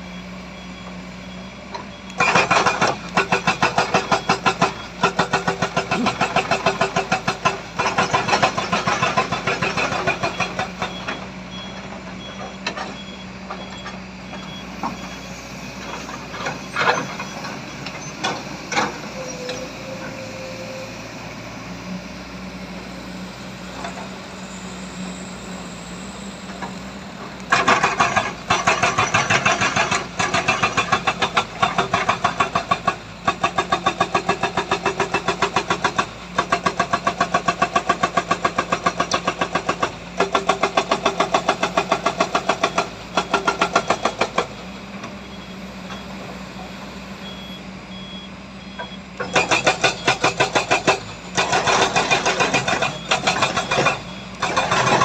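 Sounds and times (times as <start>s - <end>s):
diesel machinery engine hum: 0.0s - 55.0s
loud rapid pulsing engine: 2.5s - 10.0s.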